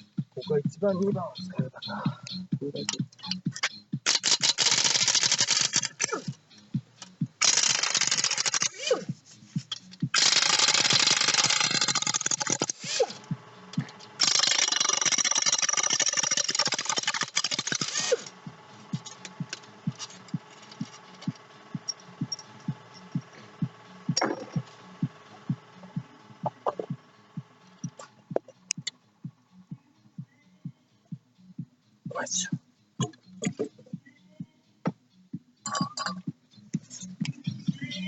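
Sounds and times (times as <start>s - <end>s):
faint hum: 8.9s - 38.0s.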